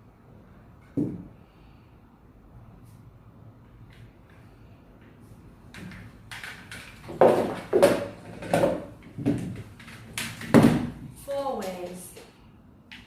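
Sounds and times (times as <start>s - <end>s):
plastic power strips clacking: 5.7s - 10.8s.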